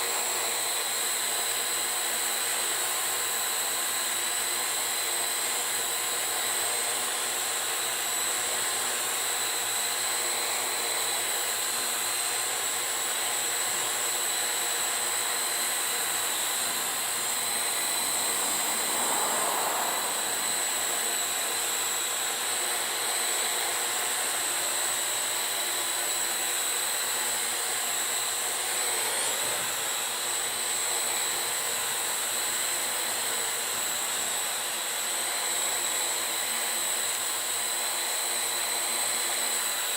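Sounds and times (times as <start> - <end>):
drone propellers whining: 12.0 - 24.8.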